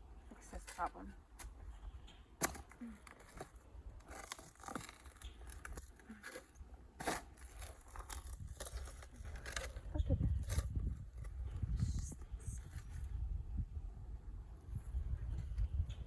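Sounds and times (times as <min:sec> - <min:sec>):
roots crackling and scraping: 0:00.2 - 0:13.7
roots snapping: 0:02.4 - 0:06.4, 0:07.0 - 0:10.7.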